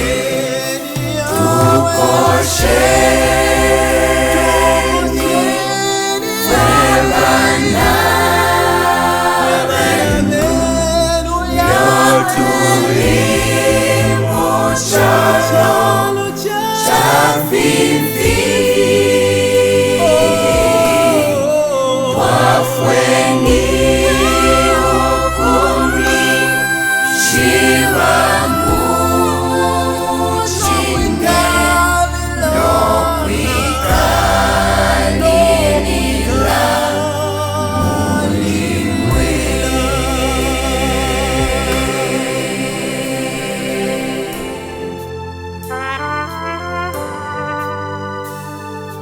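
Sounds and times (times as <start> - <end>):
choir singing gospel: 0.0 - 49.0
low bass line: 1.0 - 5.7, 6.5 - 16.3, 17.2 - 48.3.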